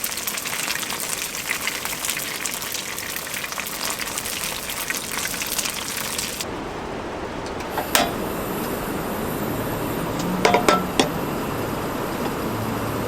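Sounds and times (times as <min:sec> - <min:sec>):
dishes and glassware clinking: 0:07.5 - 0:08.3, 0:10.2 - 0:11.2.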